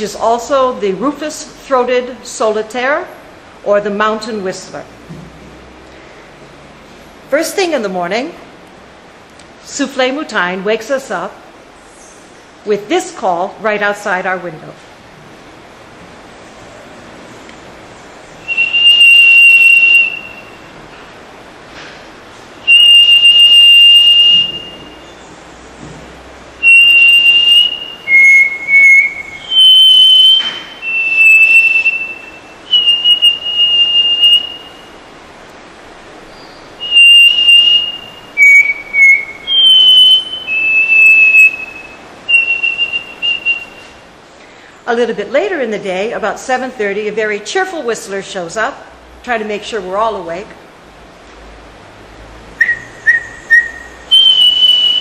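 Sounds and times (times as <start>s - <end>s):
person whistling bird call: 18.5s - 20.6s, 22.7s - 25.2s, 26.6s - 34.9s, 36.8s - 44.0s, 52.6s - 55.0s.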